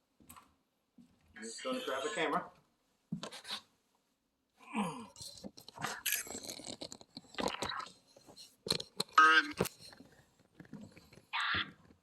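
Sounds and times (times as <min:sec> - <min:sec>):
rustling and scraping: 0:05.2 - 0:12.0.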